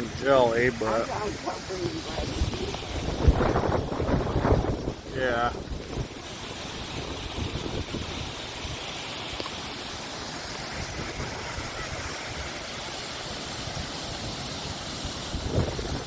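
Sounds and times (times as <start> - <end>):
wind buffeting microphone: 0.0 - 8.9, 10.4 - 12.8, 13.4 - 16.0
waves breaking on sandy beach: 0.0 - 16.0.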